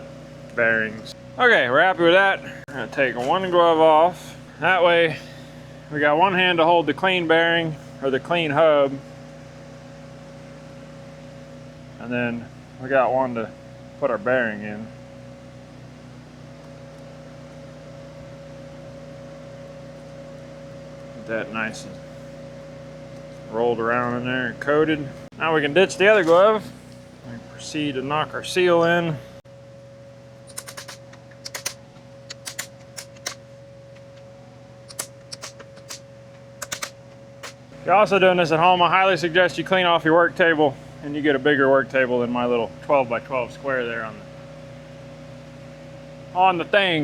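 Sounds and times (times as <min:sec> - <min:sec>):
electric fan whirring: 0:00.0 - 0:47.0
small parts clicking and tapping: 0:30.5 - 0:33.4, 0:34.9 - 0:37.6.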